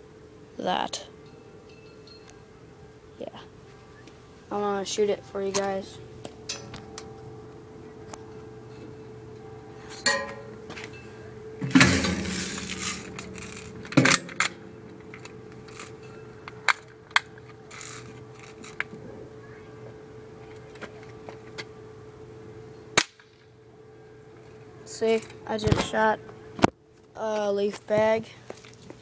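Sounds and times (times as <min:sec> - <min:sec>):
rattling clatter: 0:11.6 - 0:16.2
airsoft gun firing snap: 0:23.0 - 0:23.4.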